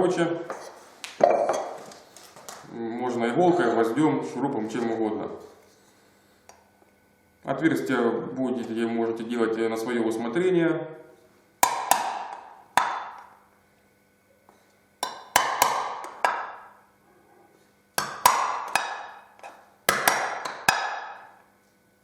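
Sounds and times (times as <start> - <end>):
nail striking tin can: 11.6 - 13.3, 15.0 - 16.7, 18.0 - 21.3.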